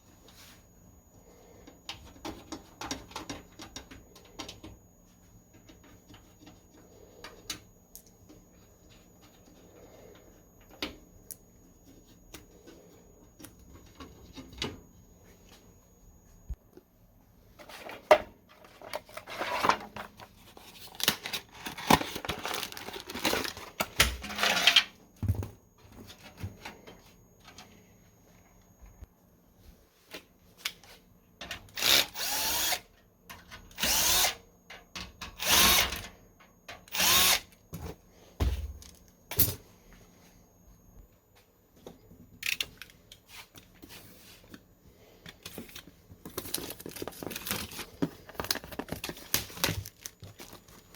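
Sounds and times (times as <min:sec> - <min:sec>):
electric screwdriver spinning: 0:31.7 - 0:32.8, 0:33.8 - 0:34.4, 0:36.9 - 0:37.5.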